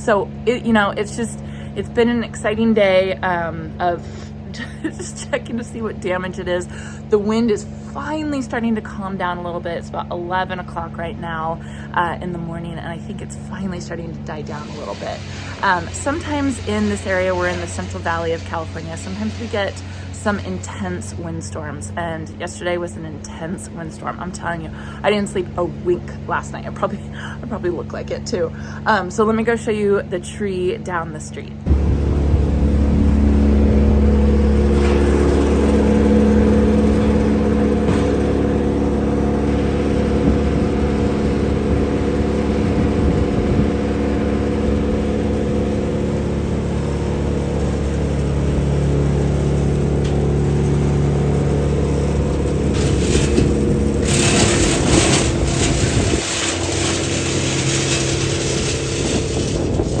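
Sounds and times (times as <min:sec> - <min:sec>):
wood chipper engine humming: 0:00.0 - 1:00.0
rushing crackling noise: 0:13.8 - 0:21.5, 0:31.7 - 1:00.0.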